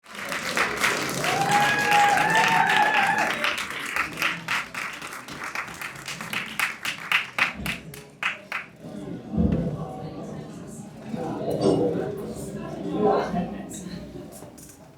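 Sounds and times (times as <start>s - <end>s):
audience applauding: 0.0s - 8.8s.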